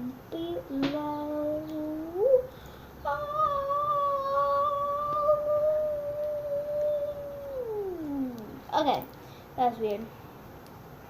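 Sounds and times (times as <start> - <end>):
girl humming a long note: 0.0 - 8.7.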